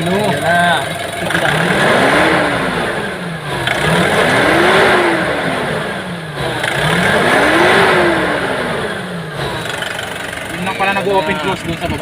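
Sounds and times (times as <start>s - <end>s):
van engine revving: 0.0s - 12.0s.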